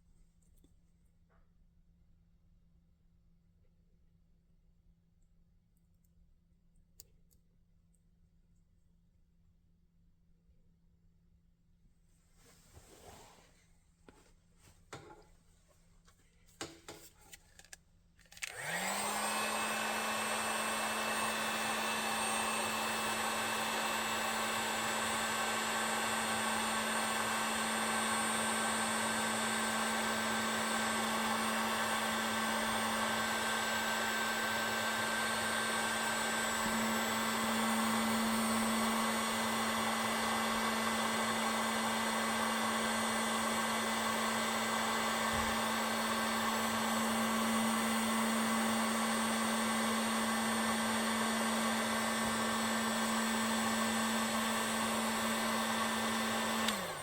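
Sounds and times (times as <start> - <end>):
heat gun fan whine: 16.6 - 57.0.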